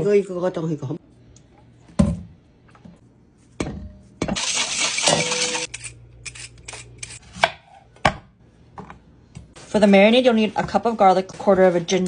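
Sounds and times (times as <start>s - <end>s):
dishes and utensils clinking: 5.0s - 5.7s.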